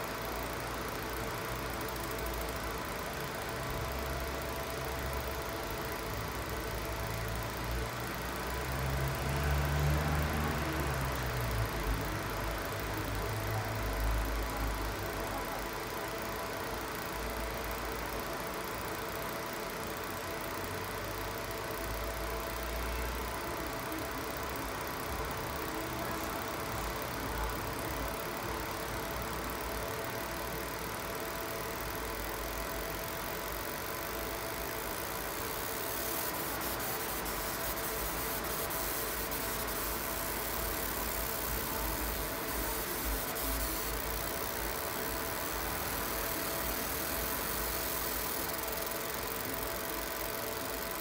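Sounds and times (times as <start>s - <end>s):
laser machine humming: 0.0s - 51.0s
faint steady tones: 12.3s - 51.0s.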